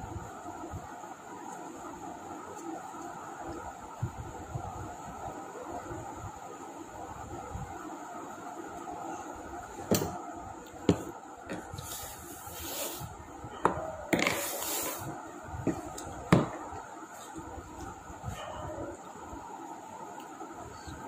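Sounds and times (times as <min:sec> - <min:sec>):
short hissy rustles: 0:11.8 - 0:13.2, 0:14.4 - 0:15.1.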